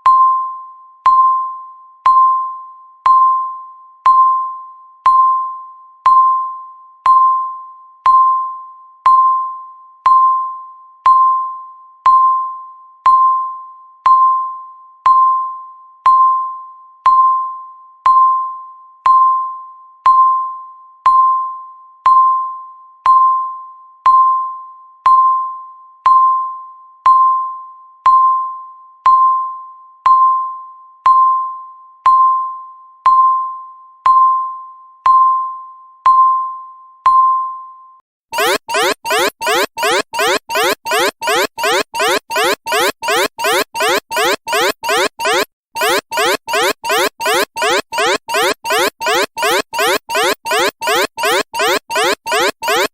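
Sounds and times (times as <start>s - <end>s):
countdown timer beeping: 38.4s - 52.9s.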